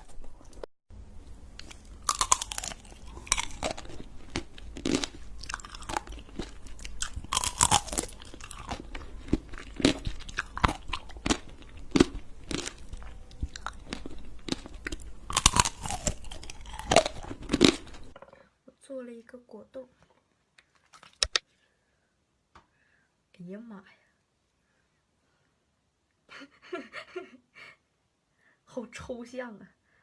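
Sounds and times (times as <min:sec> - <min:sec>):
crunchy bites and chewing: 0:01.5 - 0:18.2.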